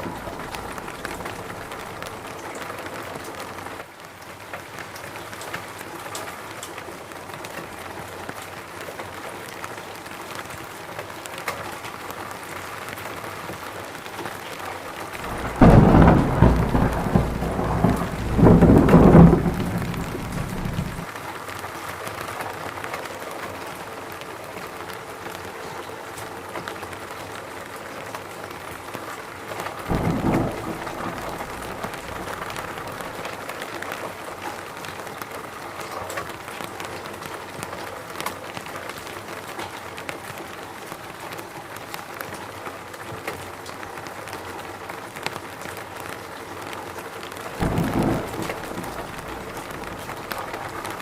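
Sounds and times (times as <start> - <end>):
low rumbles: 0.0 - 2.2, 15.2 - 21.0, 29.9 - 33.2, 47.6 - 51.0
rain pattering: 0.0 - 51.0.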